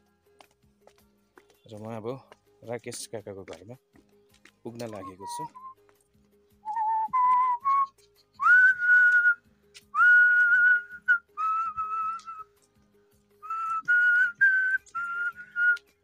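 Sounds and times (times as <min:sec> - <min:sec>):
faint repeating backing music: 0:00.0 - 0:16.0
whistled melody: 0:04.7 - 0:05.8, 0:06.6 - 0:12.6, 0:13.4 - 0:16.0.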